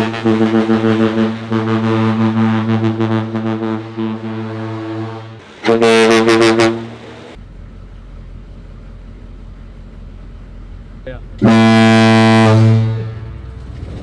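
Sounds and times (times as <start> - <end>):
deep ship horn blast: 0.0 - 7.4, 11.4 - 14.0
low vehicle rumble: 0.0 - 14.0.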